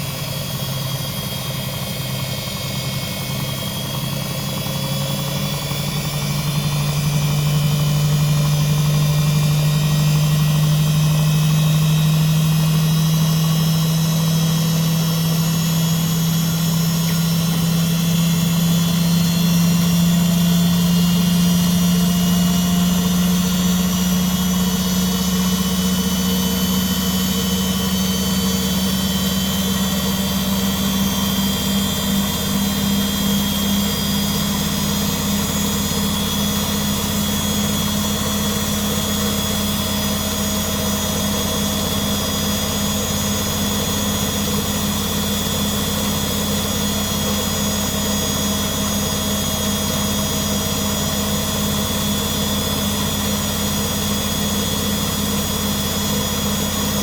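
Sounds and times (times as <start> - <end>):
washing machine motor humming: 0.0 - 57.0.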